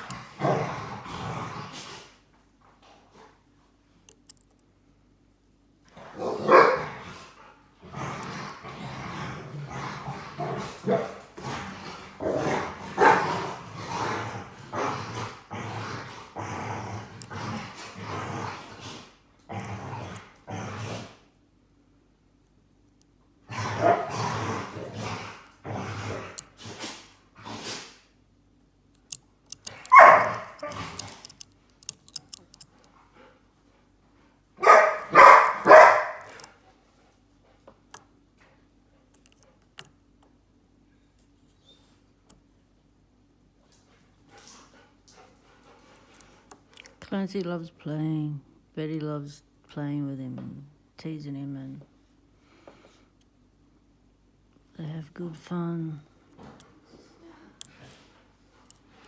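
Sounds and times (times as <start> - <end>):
dogs growling and barking: 0.0 - 2.3, 5.9 - 21.4, 23.4 - 28.1, 29.5 - 31.4, 34.6 - 36.6
dogs barking: 6.2 - 7.0, 12.2 - 13.6, 23.7 - 24.2, 29.8 - 30.8, 34.6 - 36.5.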